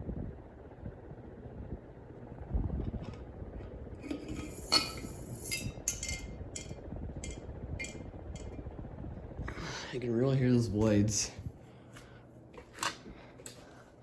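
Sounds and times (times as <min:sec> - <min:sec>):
ceiling fan low hum: 0:00.0 - 0:14.0
glass globe clinking on metal: 0:04.1 - 0:08.5.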